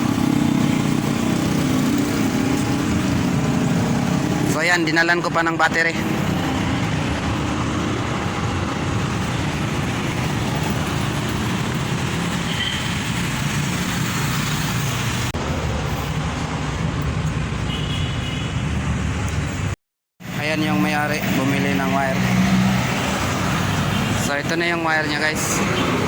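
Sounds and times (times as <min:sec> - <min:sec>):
highway traffic rumble: 0:00.0 - 0:26.0.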